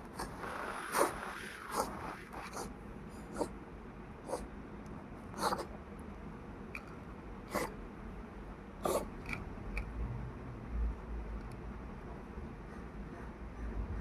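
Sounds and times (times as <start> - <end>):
cat coughing: 5.4 - 5.7, 7.5 - 7.7, 8.8 - 9.1.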